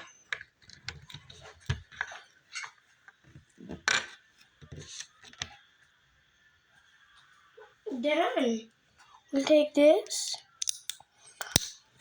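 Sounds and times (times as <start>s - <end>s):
plastic bricks clicking: 10.6s - 11.8s.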